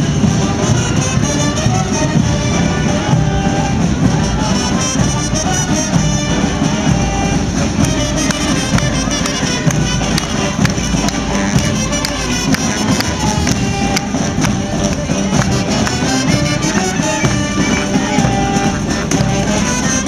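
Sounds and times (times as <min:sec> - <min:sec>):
brass band horns: 0:00.0 - 0:20.0
sharp percussion hits: 0:06.5 - 0:19.7.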